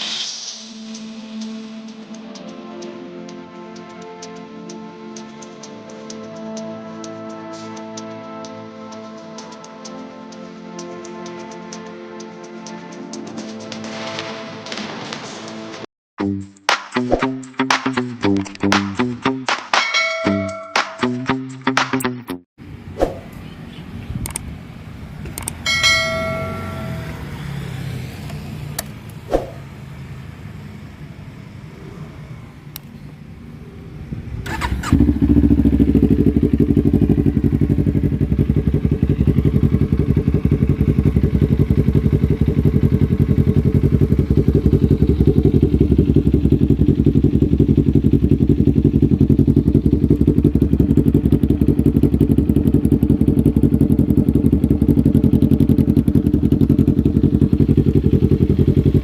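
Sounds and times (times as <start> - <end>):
motorcycle engine idling: 23.4 - 59.0
click: 24.2 - 24.5, 25.2 - 25.6, 32.7 - 32.9
short tone: 25.7 - 27.6.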